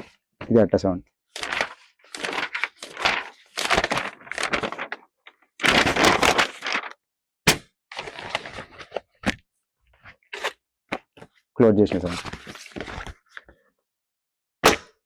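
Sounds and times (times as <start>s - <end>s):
book cover rustling and flapping: 1.4s - 7.0s, 7.9s - 9.4s, 10.0s - 11.4s, 12.0s - 13.6s.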